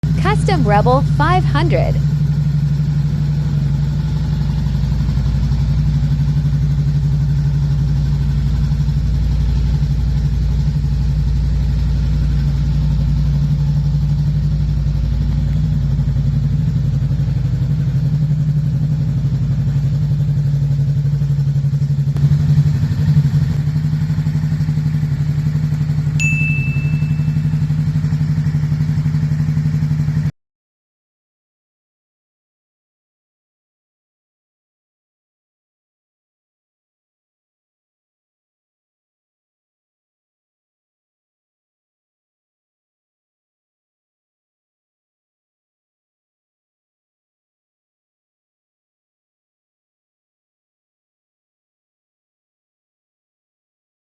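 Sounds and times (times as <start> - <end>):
motorcycle engine idling: 1.0 - 30.3
motorcycle throttle blip: 26.2 - 27.7.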